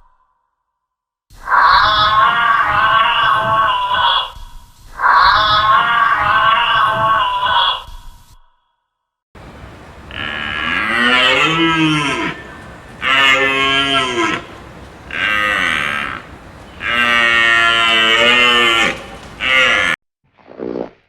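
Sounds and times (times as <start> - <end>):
cow mooing: 9.4 - 20.0.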